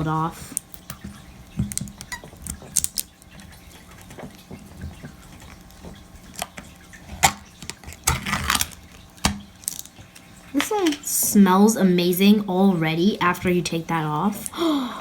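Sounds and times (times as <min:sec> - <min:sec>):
paper seal crinkling: 0:05.3 - 0:10.3.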